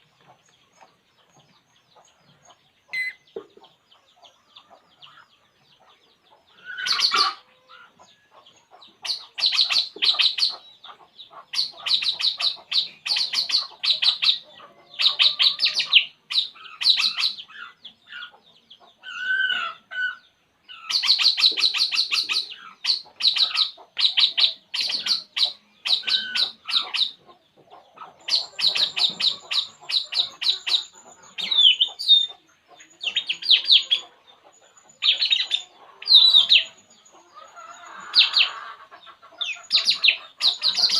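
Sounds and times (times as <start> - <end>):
bird chattering in rapid trills: 6.6 - 7.4, 8.9 - 19.2, 20.1 - 27.3, 28.0 - 40.9.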